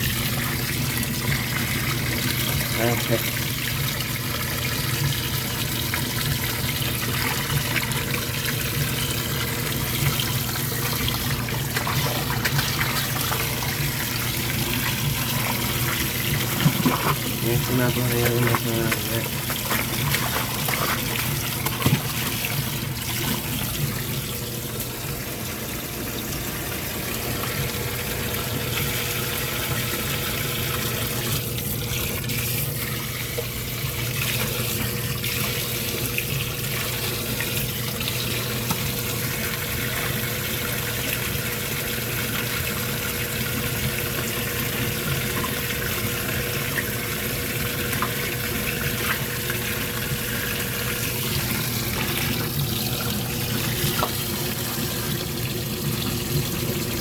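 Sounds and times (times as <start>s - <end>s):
washing machine running: 0.0s - 57.0s
water flowing in tub: 0.0s - 57.0s.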